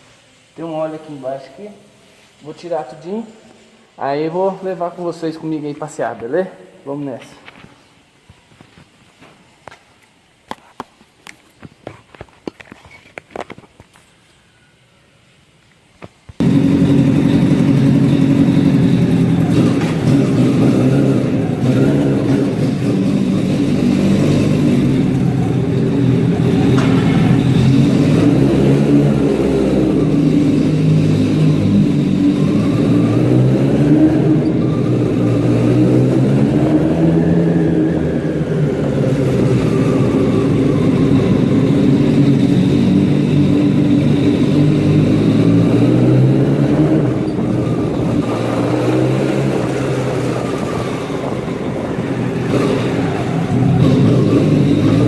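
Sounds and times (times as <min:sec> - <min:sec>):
motorcycle engine revving: 0:16.4 - 0:55.0.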